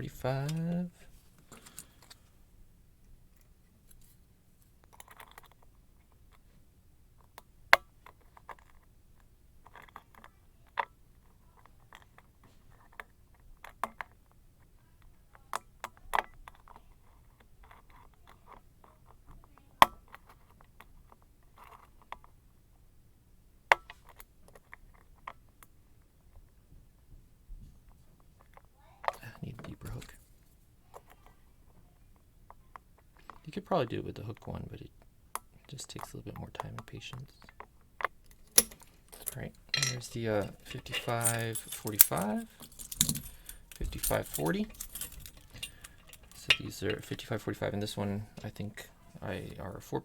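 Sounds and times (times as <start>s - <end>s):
lock pick scraping in keyway: 38.1s - 47.4s.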